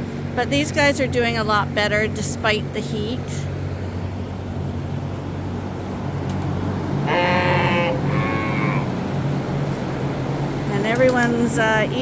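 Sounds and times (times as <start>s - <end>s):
ventilation fans humming: 0.0s - 12.0s
sheep bleating: 7.0s - 8.9s.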